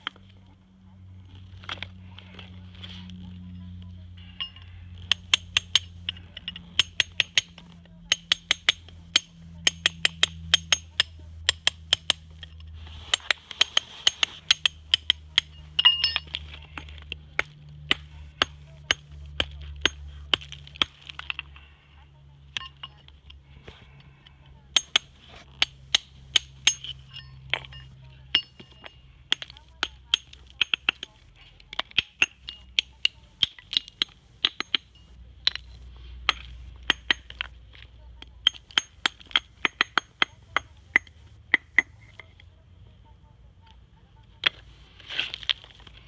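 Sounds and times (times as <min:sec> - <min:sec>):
hammer clinking on stone: 0:04.2 - 0:21.5, 0:22.6 - 0:23.2, 0:24.8 - 0:37.5, 0:38.4 - 0:42.3.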